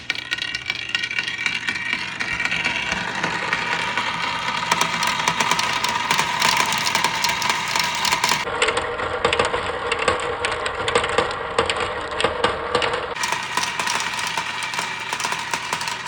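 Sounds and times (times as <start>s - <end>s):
marbles clicking on wooden track: 0.0s - 8.5s, 10.4s - 16.0s
marbles rolling hum: 0.0s - 8.5s, 12.7s - 16.0s.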